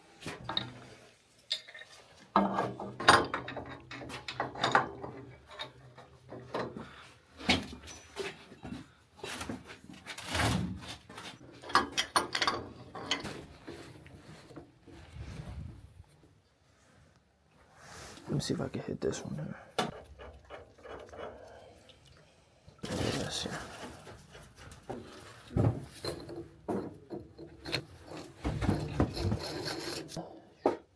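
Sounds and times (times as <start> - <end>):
hard objects knocking and clattering: 2.3 - 6.9, 24.0 - 30.9.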